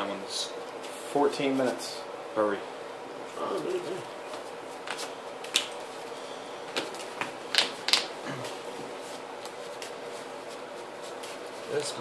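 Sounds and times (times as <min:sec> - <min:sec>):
faint steady hum: 0:00.0 - 0:12.0
cards being handled: 0:03.5 - 0:06.1, 0:06.7 - 0:12.0.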